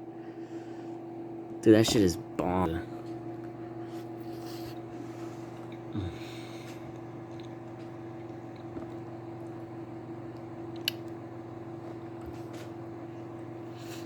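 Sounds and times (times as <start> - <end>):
microwave oven humming: 0.0 - 14.0
faint chewing: 3.4 - 9.6, 10.3 - 11.2.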